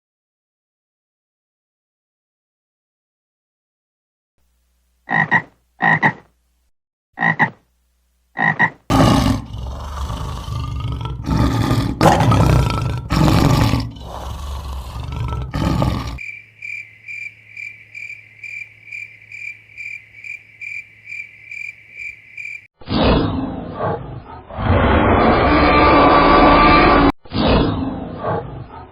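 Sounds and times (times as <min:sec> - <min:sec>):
frog croaks: 0:05.1 - 0:06.3, 0:07.2 - 0:07.6, 0:08.4 - 0:22.7
loud rough roaring: 0:08.9 - 0:16.2, 0:24.6 - 0:27.1.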